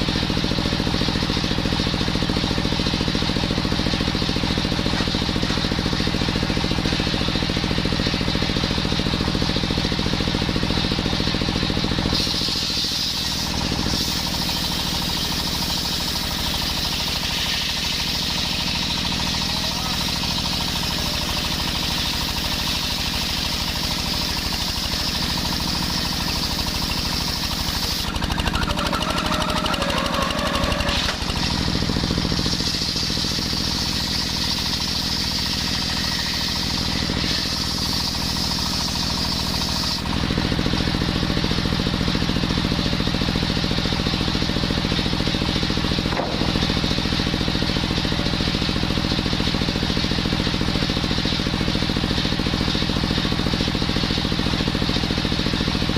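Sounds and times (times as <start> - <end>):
brushcutter engine running: 0.0 - 55.9
saw blade cutting hiss: 12.1 - 40.1.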